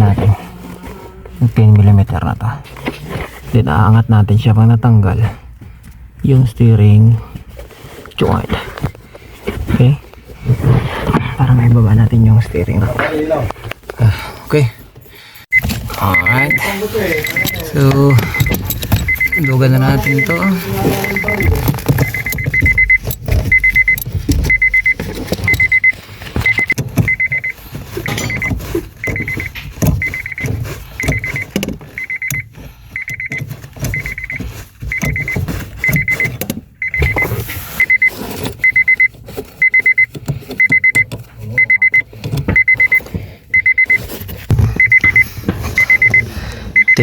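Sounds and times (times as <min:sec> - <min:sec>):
electronic beeping: 0:15.5 - 0:44.0, 0:44.6 - 0:47.0
hand tools clicking on a bolt: 0:17.1 - 0:37.0.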